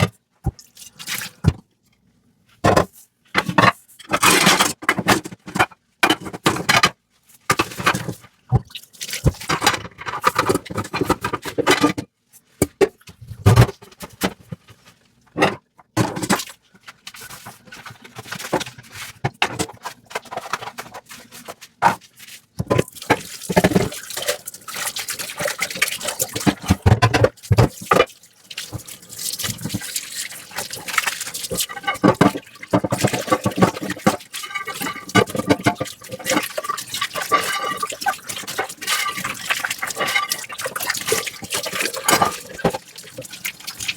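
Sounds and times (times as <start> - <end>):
dish scrubbing: 7.5 - 12.0, 17.1 - 43.9
water running: 22.8 - 43.9.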